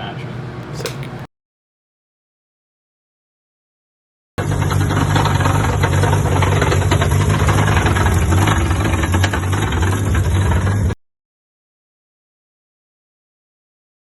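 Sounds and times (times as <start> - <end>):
rotary engine idling: 4.4 - 11.0.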